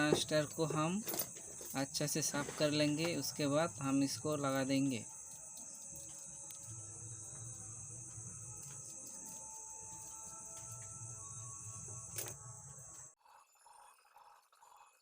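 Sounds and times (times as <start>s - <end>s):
insect chirring: 0.0s - 15.0s
low hum: 3.7s - 13.2s.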